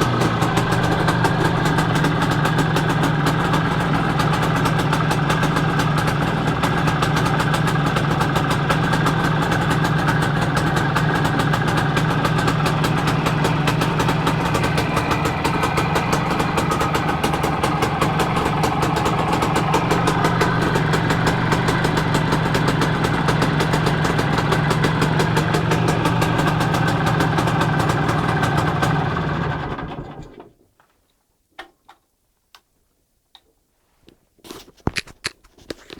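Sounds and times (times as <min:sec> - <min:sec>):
motorcycle engine idling: 0:00.0 - 0:30.2.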